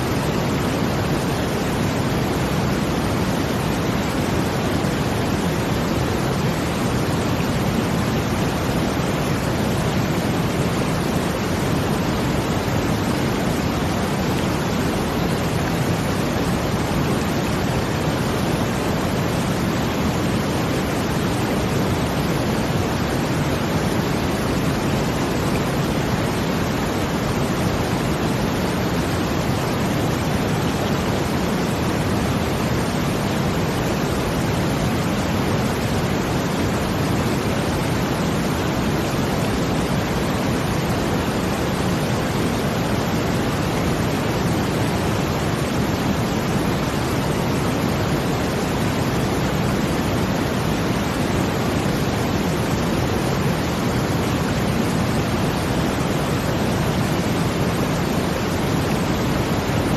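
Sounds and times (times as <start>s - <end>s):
brown noise hiss: 0.0s - 59.9s.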